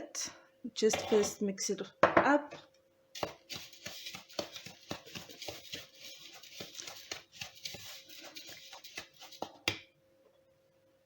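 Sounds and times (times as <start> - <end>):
utensil scraping a bowl: 0.9 - 1.4, 3.2 - 9.7.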